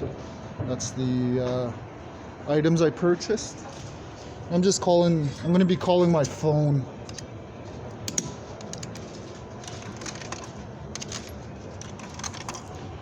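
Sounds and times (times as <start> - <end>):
background hum: 0.0 - 13.0
payphone clicks and clatters: 8.1 - 13.0.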